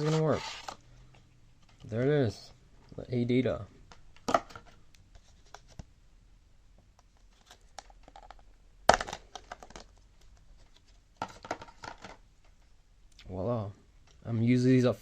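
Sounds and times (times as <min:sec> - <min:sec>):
packaging clicks and crinkling: 0:07.3 - 0:12.2.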